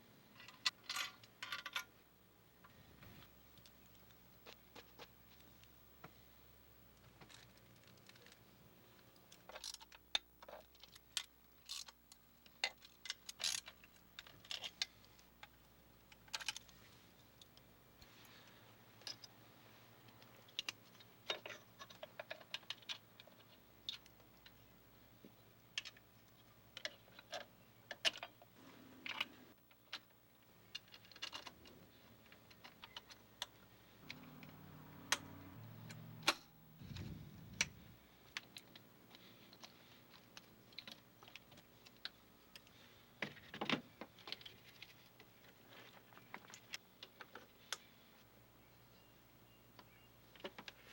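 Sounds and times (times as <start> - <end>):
low hum: 33.8 - 38.2.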